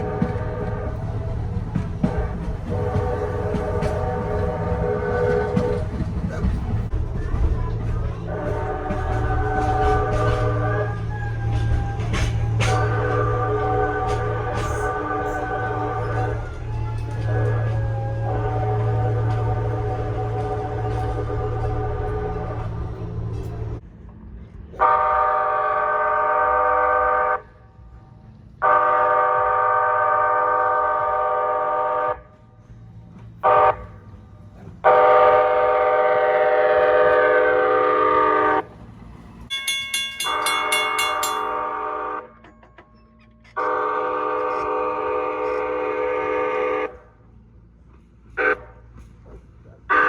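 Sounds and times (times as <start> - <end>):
train horn blasts: 0.0 - 6.1, 8.0 - 23.0, 24.8 - 27.7, 28.6 - 32.4, 33.4 - 34.1, 34.8 - 38.7, 40.2 - 42.8, 43.5 - 47.2, 48.4 - 48.9
rapid high ringing: 39.5 - 41.8.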